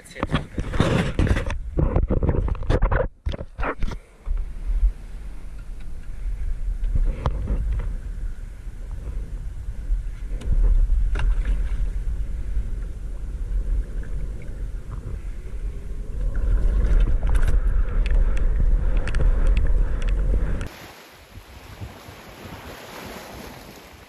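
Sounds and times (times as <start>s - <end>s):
wind rumbling on microphone: 0.0s - 24.0s
water splashes: 20.6s - 24.0s.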